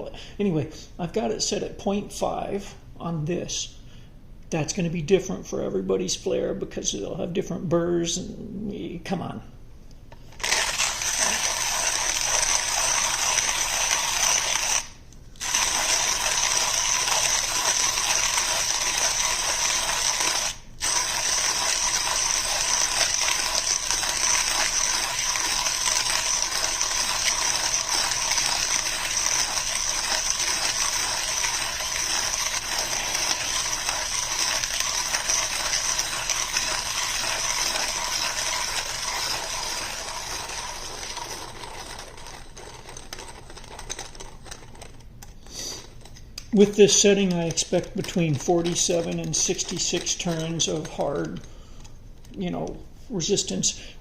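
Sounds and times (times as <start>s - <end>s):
hand coffee grinder grinding beans: 10.2s - 52.5s.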